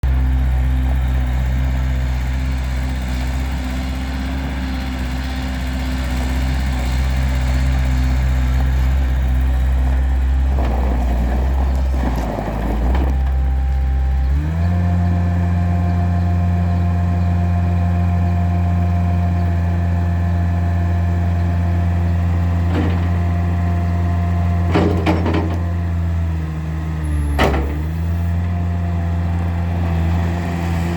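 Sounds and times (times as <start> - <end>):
loader engine running: 0.0 - 30.9
short knocks: 27.4 - 28.2.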